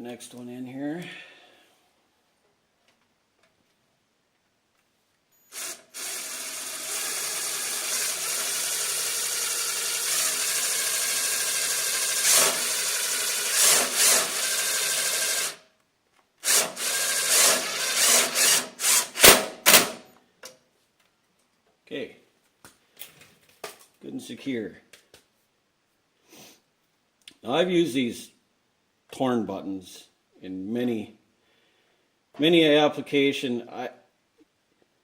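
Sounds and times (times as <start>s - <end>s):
power drill driving screw: 5.4s - 15.6s, 16.4s - 20.1s.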